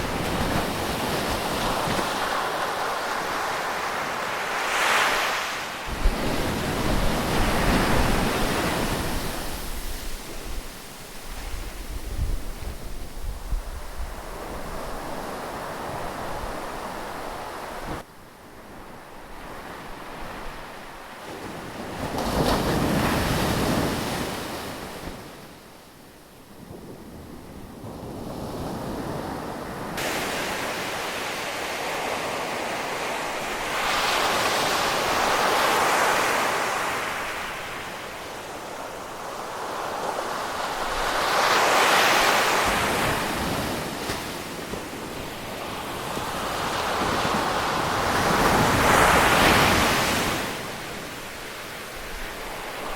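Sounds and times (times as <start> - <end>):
waves breaking and washing in: 0.0 - 52.9
wind on microphone: 5.8 - 18.0, 40.2 - 52.9.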